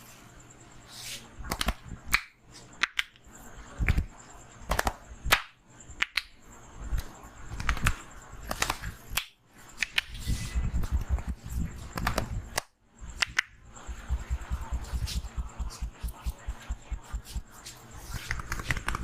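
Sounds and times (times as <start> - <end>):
hands slapping head and neck: 1.5 - 3.2, 4.7 - 6.3, 7.0 - 10.2, 11.9 - 13.5, 18.2 - 19.0.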